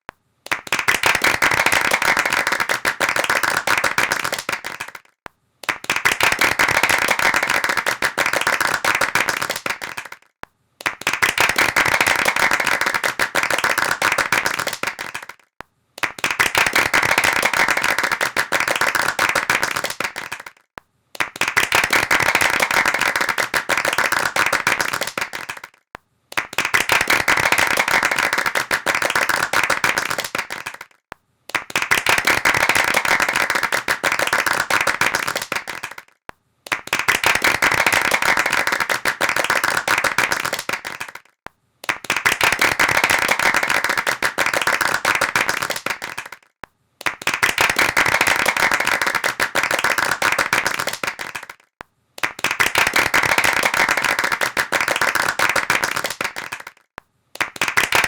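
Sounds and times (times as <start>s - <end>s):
hands clapping: 0.0s - 58.0s.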